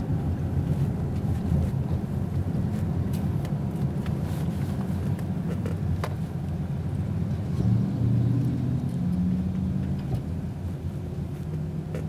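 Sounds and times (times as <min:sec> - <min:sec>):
car driving on highway: 0:00.0 - 0:12.0.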